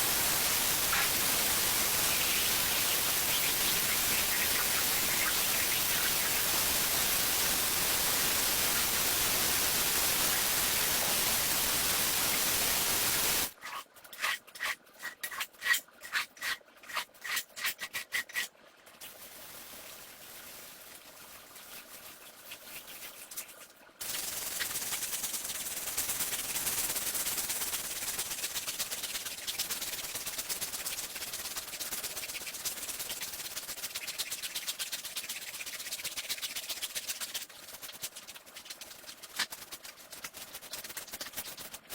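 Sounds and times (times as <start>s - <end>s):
steady hiss: 0.0s - 13.5s, 24.0s - 28.7s.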